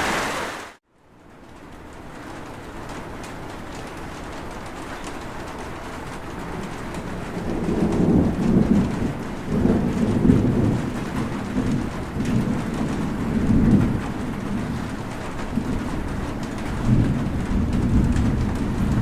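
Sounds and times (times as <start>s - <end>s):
rain falling: 0.0s - 19.0s
rolling thunder: 4.0s - 19.0s.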